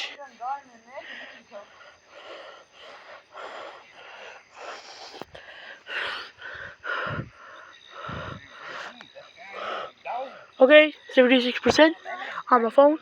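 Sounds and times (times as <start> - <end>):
person breathing close: 1.0 - 10.5.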